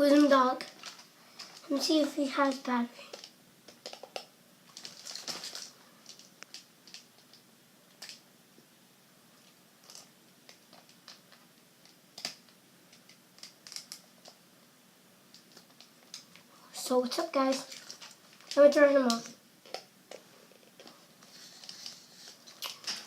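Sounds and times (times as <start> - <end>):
plastic toy clicks and rustles: 2.4 - 7.4, 12.2 - 14.4.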